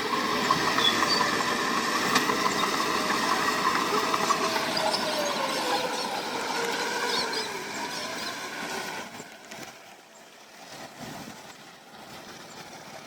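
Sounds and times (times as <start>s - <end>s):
diesel engine running: 0.0s - 9.6s.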